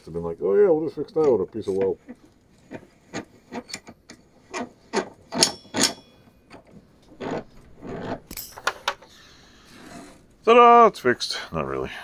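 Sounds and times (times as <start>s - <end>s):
metal clinks and scrapes from vise: 3.1s - 9.2s.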